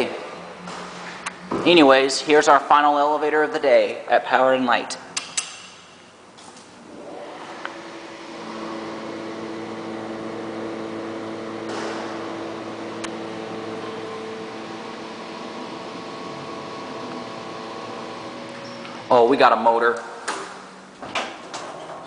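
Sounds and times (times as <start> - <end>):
elevator motor humming: 6.8 - 19.9.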